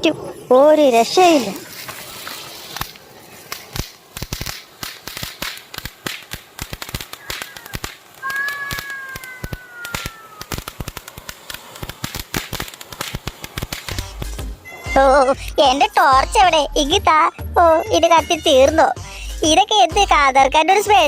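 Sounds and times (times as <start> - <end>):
firecrackers popping: 0.7 - 17.2
falling whining cry: 7.2 - 10.7.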